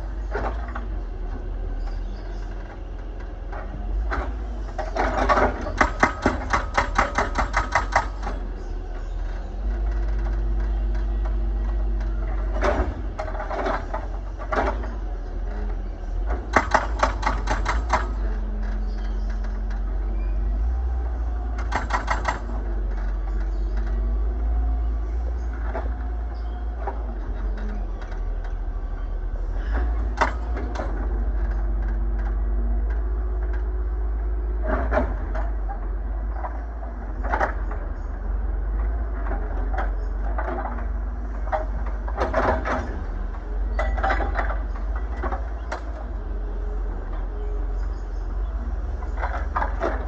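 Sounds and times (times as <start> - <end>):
excavator engine running: 0.0 - 50.0
rapid metallic clatter: 21.6 - 23.7.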